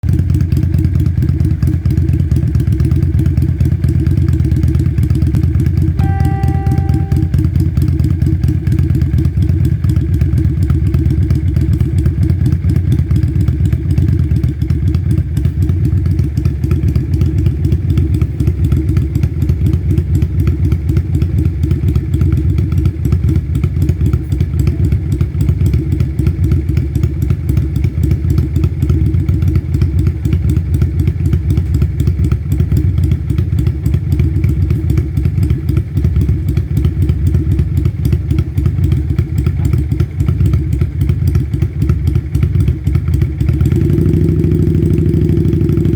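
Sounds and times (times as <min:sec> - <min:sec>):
motorcycle engine running: 0:00.0 - 0:45.9
short pitched tone: 0:06.0 - 0:07.8.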